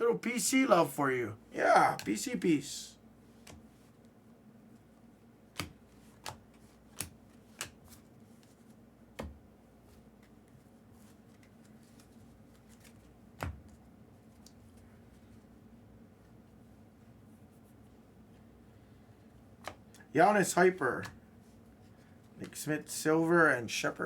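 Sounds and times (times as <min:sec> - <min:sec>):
trading cards being handled: 0:09.9 - 0:13.2.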